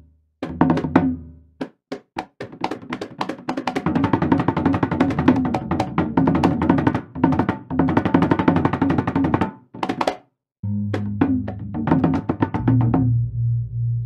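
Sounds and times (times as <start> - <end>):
fast drum strokes with pitched tones: 11.0 - 13.1.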